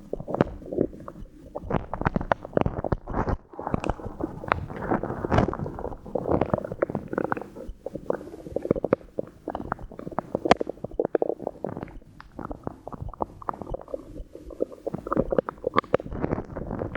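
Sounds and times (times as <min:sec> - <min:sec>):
stomach gurgling: 0:00.0 - 0:16.9.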